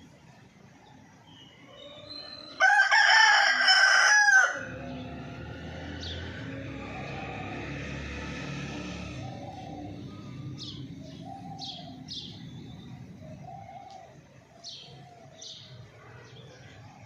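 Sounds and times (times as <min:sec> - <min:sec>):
low cooing bird notes: 0:01.6 - 0:17.0
rooster crowing: 0:01.8 - 0:09.7.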